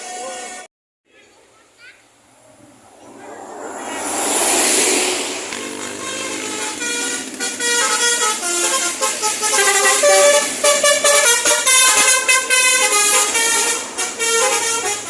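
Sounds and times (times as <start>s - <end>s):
bus passing: 1.4s - 15.0s
musical air horn tune: 5.7s - 15.0s.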